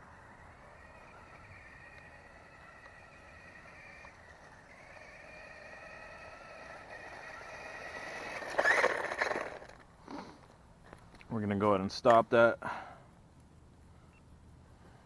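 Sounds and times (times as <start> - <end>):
rc truck motor whine: 0.0 - 9.8.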